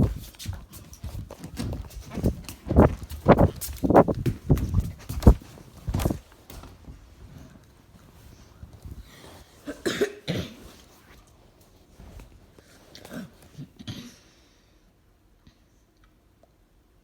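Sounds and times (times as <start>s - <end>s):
cough-like bursts: 9.6s - 10.8s, 13.0s - 14.4s.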